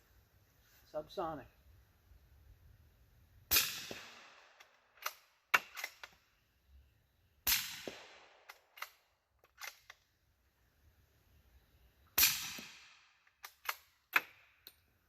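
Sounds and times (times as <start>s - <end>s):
suppressed rifle shots: 3.5s - 6.0s, 7.4s - 9.0s, 12.2s - 14.4s
rifle bolt metallic clicks: 4.6s - 6.2s, 8.5s - 10.0s, 13.3s - 14.8s.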